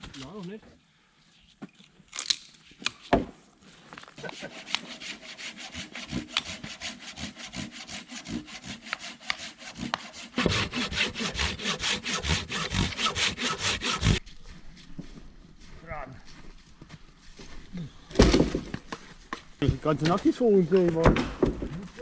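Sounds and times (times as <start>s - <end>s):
hand saw cutting wood: 4.2s - 14.2s.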